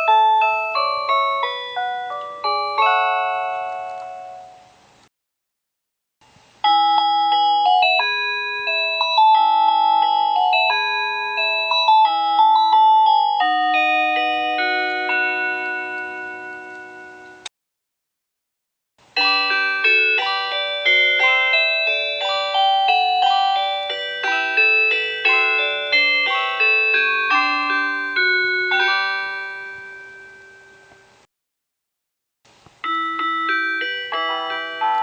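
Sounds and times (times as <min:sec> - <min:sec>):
decaying bell notes: 0:00.0 - 0:04.6, 0:06.7 - 0:17.4, 0:19.2 - 0:30.9
electronic chime melody: 0:06.7 - 0:17.4.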